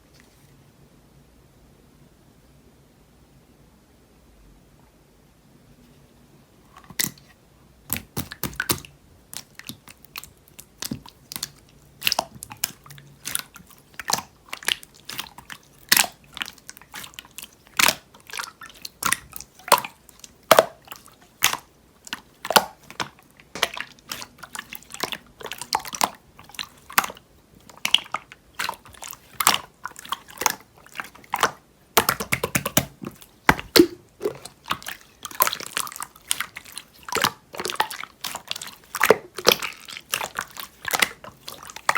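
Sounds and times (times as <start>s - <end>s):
slime squeezed wet clicks and pops: 7.9s - 17.1s, 19.0s - 24.3s, 27.8s - 41.9s.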